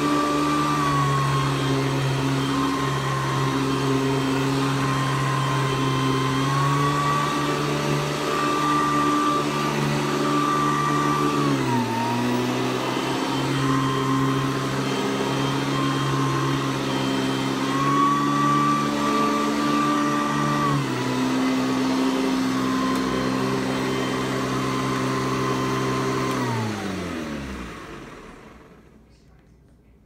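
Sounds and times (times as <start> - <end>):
vacuum motor winding down: 0.0 - 29.0
vacuum cleaner running: 0.0 - 29.3.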